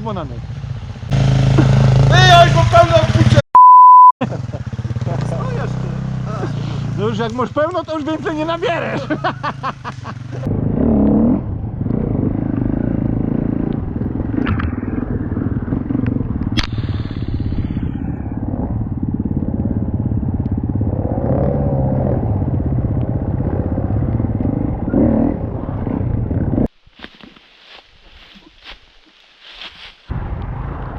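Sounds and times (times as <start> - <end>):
motorcycle engine revving: 0.2 - 3.4, 4.2 - 7.4, 10.2 - 26.7
sharp click: 16.6 - 16.8.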